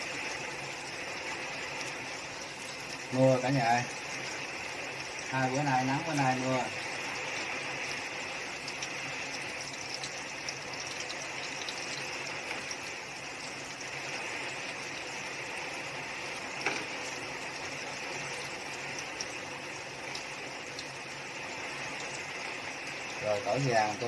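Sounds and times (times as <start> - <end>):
steady rain falling: 0.0 - 24.0.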